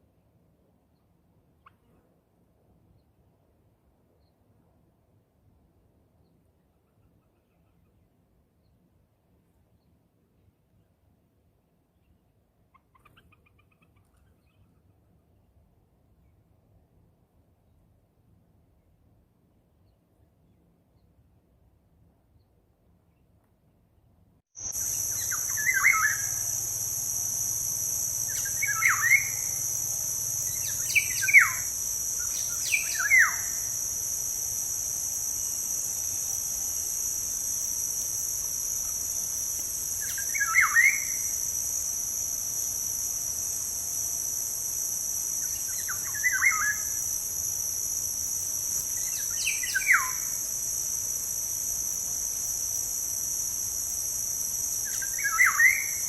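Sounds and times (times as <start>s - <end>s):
bird chirping: 24.6s - 43.7s, 48.8s - 50.4s, 54.8s - 56.0s
insects droning: 24.6s - 56.0s.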